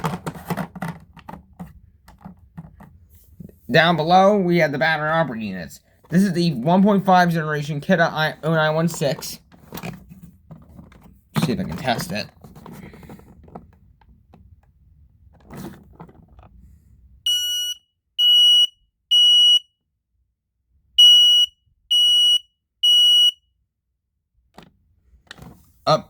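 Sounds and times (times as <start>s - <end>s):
smoke alarm beeping: 17.3s - 19.7s, 21.0s - 23.4s.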